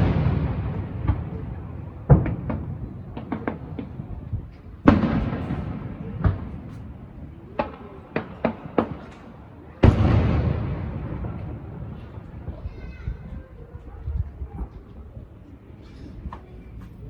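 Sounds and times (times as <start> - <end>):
firework booms echoing: 0.0 - 9.2, 9.8 - 12.5
sharp firework cracks: 4.8 - 9.2.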